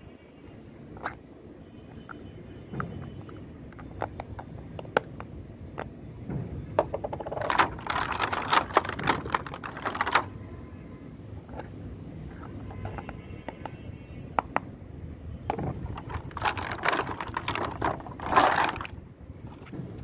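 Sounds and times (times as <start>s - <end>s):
plastic toy pieces clicking: 6.9s - 10.3s, 15.9s - 18.9s
packaging crinkling: 7.4s - 10.3s, 15.8s - 19.0s.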